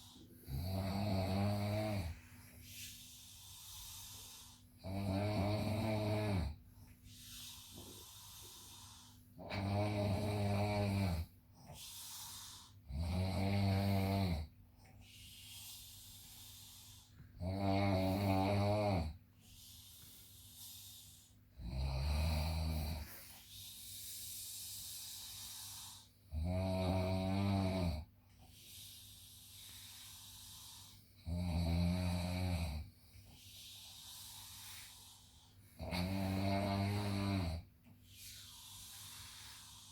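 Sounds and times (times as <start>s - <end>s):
person snoring: 0.0s - 6.6s, 7.3s - 14.5s, 15.6s - 19.2s, 21.5s - 23.4s, 24.6s - 28.1s, 29.2s - 32.9s, 33.6s - 39.9s
airy out-breath: 38.0s - 39.9s.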